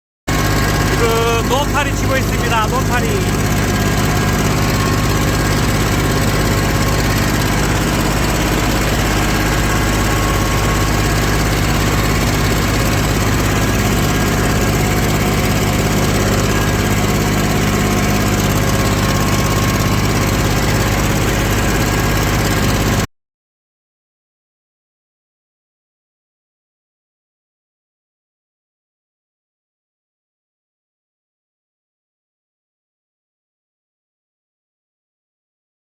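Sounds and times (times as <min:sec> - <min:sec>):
tractor engine running: 0:00.3 - 0:23.1.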